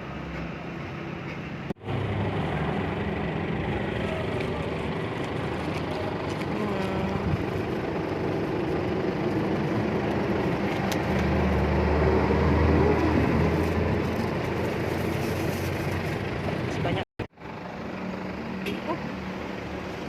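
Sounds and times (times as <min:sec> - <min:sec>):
engine passing close: 0:00.0 - 0:20.0
road traffic: 0:00.0 - 0:20.0.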